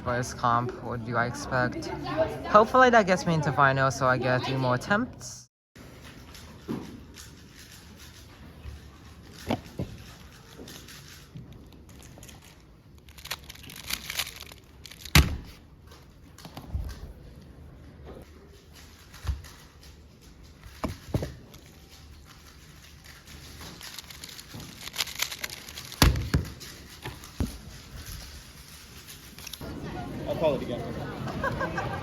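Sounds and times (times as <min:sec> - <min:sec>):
puzzle cube plastic clicks: 0:09.4 - 0:15.3, 0:18.8 - 0:27.4.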